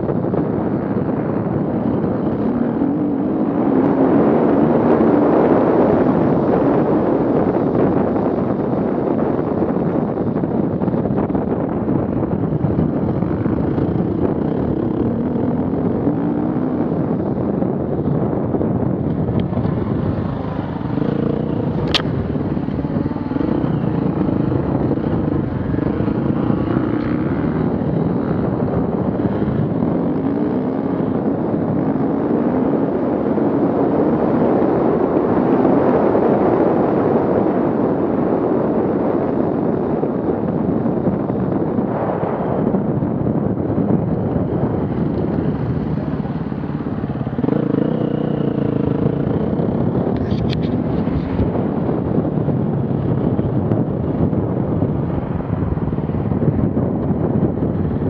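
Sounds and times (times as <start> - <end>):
off-road vehicle engines revving: 19.1 - 32.7
sharp click: 21.8 - 22.2.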